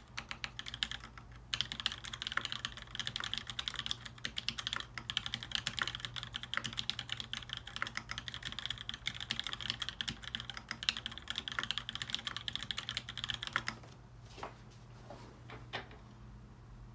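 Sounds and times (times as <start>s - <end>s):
fast typing on mechanical keyboard: 0.0s - 13.8s.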